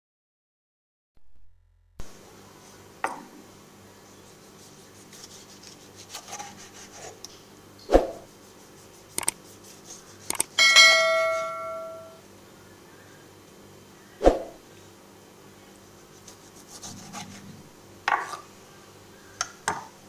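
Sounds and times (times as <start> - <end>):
kitchenware clinking: 10.6 - 12.2
metal utensil striking ringing metal: 10.6 - 12.2.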